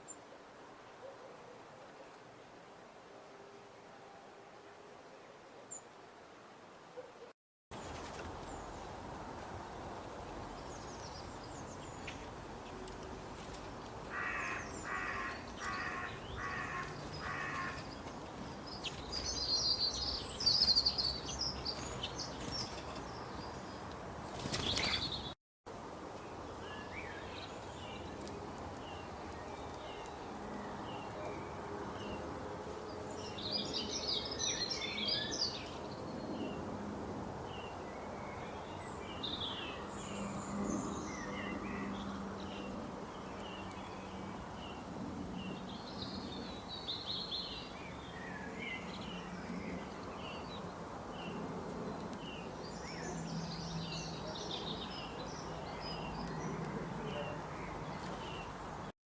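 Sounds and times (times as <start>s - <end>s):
steady outdoor hiss: 0.0s - 58.9s
harsh bird calls: 14.1s - 22.7s.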